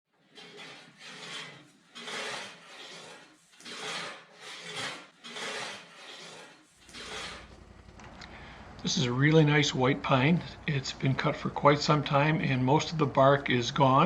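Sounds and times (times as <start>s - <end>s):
rasping strokes on wood: 0.1s - 7.6s.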